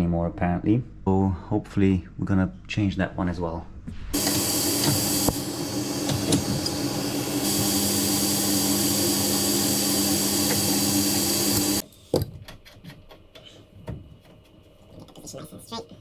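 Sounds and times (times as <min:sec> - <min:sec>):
electric motor humming: 0:04.2 - 0:11.8.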